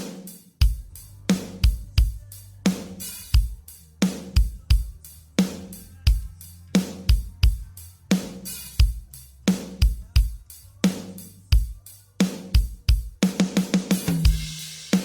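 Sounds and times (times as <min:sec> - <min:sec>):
snare drum: 0:00.0 - 0:01.9, 0:02.7 - 0:04.6, 0:08.1 - 0:10.0, 0:10.9 - 0:15.0
hi-hat: 0:00.0 - 0:15.0
kick drum: 0:00.6 - 0:00.9, 0:01.6 - 0:02.2, 0:03.4 - 0:03.6, 0:04.4 - 0:05.0, 0:06.1 - 0:06.3, 0:07.1 - 0:07.7, 0:08.8 - 0:09.1, 0:09.8 - 0:10.4, 0:11.6 - 0:11.8, 0:12.6 - 0:13.5, 0:14.1 - 0:14.6
low bass line: 0:00.6 - 0:11.5.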